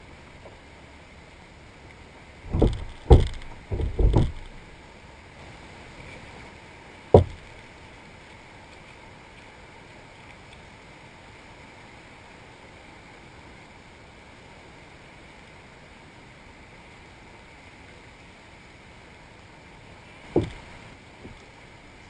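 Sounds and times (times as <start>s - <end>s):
steady hiss: 0.0s - 22.0s
dull heavy knocks: 2.5s - 4.7s, 7.1s - 7.5s, 20.3s - 21.4s.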